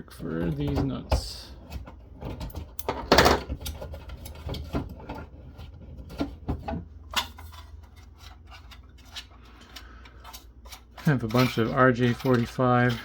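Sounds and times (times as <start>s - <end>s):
metal forceps clicking and scraping: 0.0s - 13.0s.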